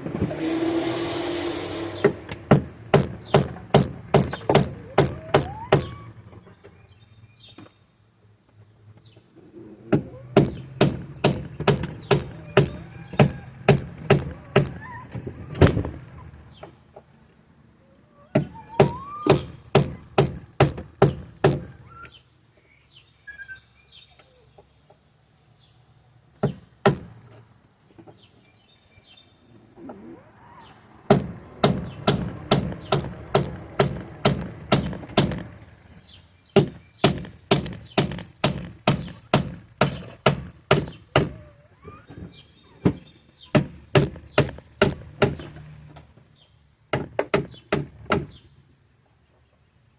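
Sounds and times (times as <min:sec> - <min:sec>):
sledgehammer striking screwdriver: 0:31.1 - 0:35.6.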